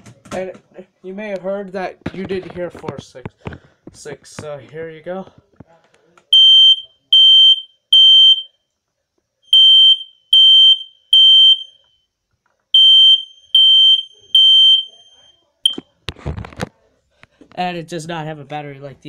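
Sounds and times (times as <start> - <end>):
smoke alarm high-pitched beeps: 6.3 - 8.6, 9.5 - 12.1, 12.8 - 15.8.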